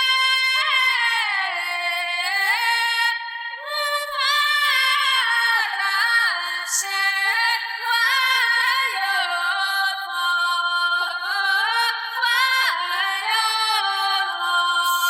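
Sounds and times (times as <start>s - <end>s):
woman singing slow melody: 0.0s - 15.0s.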